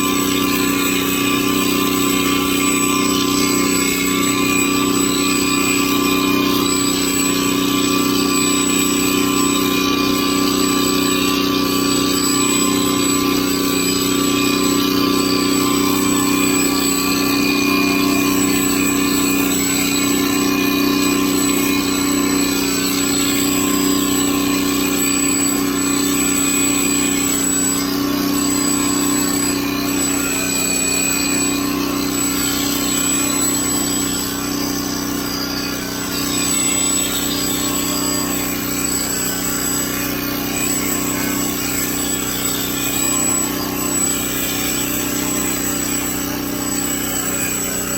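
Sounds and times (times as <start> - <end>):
electric hair clipper buzzing: 0.0 - 47.9.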